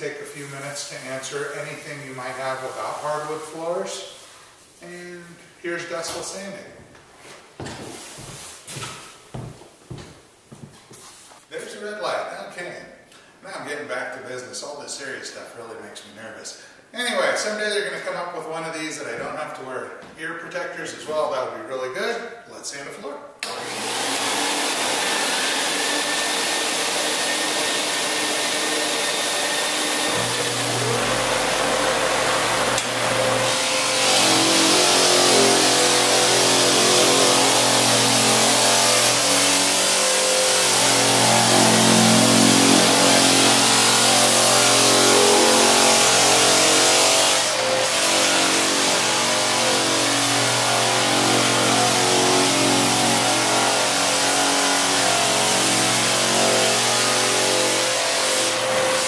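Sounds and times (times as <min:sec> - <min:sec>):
floor sander sanding wood: 0:00.2 - 0:05.0, 0:05.8 - 0:11.5, 0:23.4 - 0:59.0
vacuum running: 0:23.4 - 0:59.0.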